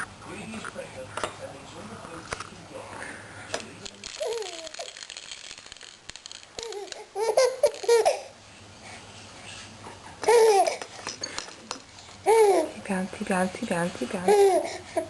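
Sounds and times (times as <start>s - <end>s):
baby laughing: 4.2s - 4.9s, 6.6s - 8.3s, 10.2s - 10.9s, 12.2s - 12.8s, 14.2s - 15.0s.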